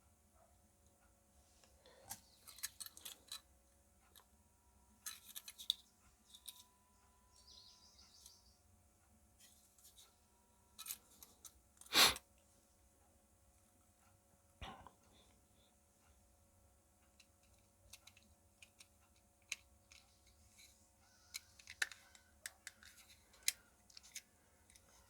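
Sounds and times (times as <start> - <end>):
clock parts clicking and scraping: 2.1 - 4.3, 5.0 - 6.7, 10.8 - 12.0, 17.1 - 25.0.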